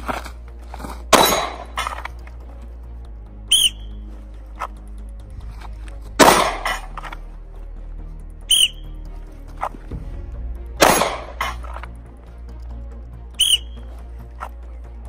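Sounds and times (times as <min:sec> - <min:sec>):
short high whistle blast: 0:03.5 - 0:03.9, 0:08.5 - 0:08.8, 0:13.4 - 0:13.8
handgun shots: 0:06.2 - 0:06.8.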